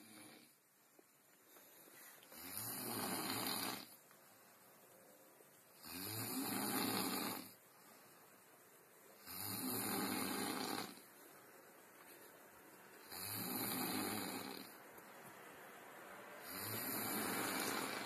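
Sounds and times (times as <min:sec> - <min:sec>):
bear snoring: 0:02.4 - 0:03.9, 0:09.2 - 0:11.0, 0:13.1 - 0:14.7, 0:16.4 - 0:18.0.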